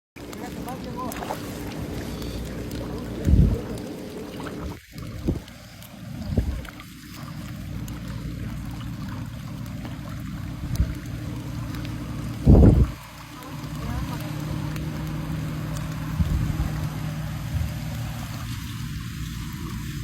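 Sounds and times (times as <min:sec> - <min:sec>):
wind rumble on microphone: 0:00.6 - 0:06.8, 0:10.3 - 0:20.0.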